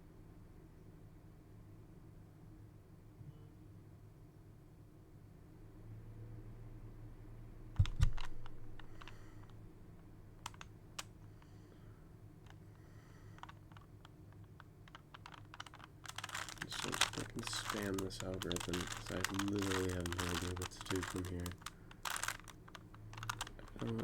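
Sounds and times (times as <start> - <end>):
plastic cube layers clicking: 7.8 - 9.6, 10.4 - 11.2, 13.3 - 24.0.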